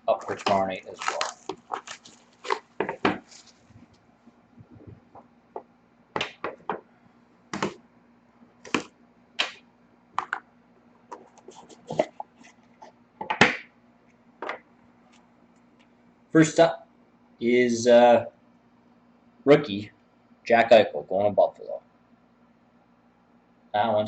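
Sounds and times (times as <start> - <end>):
cards rustling: 0.0 - 3.9, 11.1 - 12.9.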